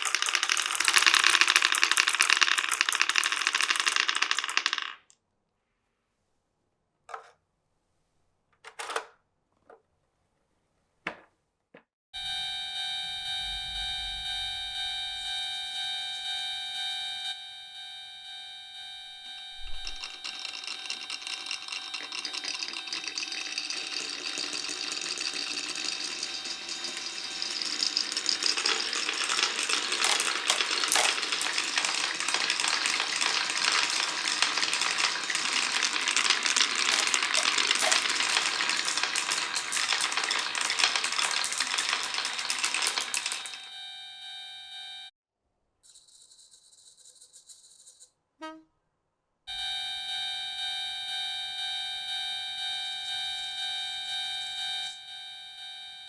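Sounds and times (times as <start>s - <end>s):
marbles clattering down wooden run: 0.0s - 5.1s, 19.6s - 43.7s
steady tone: 12.9s - 15.8s.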